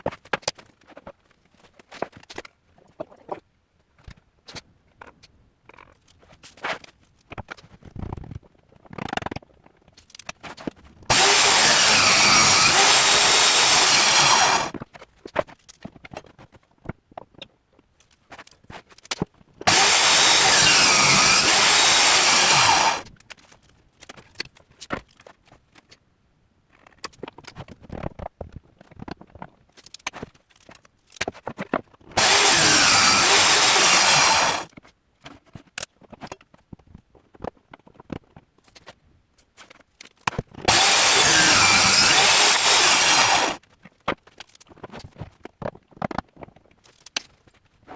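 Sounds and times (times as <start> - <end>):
workpiece handling clicks and knocks: 4.0 - 10.8, 26.7 - 32.1
power saw cutting wood: 11.1 - 14.8, 19.7 - 23.0, 32.2 - 34.7, 40.7 - 43.6.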